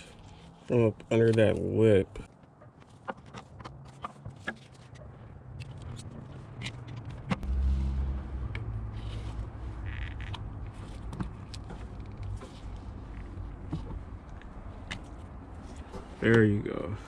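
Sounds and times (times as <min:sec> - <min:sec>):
battery terminal clicking and scraping: 0:02.7 - 0:07.5
low rumble: 0:07.4 - 0:10.8.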